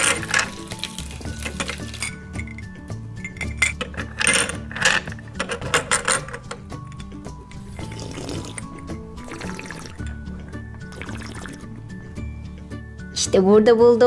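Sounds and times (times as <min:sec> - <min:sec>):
toy pieces clicking and clinking: 0:00.0 - 0:02.6, 0:03.3 - 0:07.0
background music: 0:00.0 - 0:14.0.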